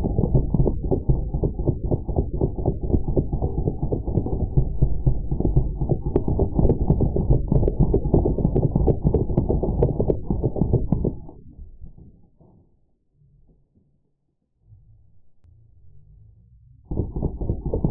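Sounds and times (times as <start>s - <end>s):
bb machine gun firing full-auto: 16.9s - 17.9s.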